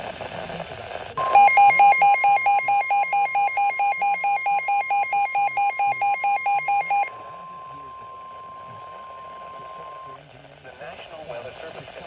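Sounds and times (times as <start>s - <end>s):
steady alarm tone: 1.2s - 10.1s
radio alert beeps: 1.2s - 10.2s.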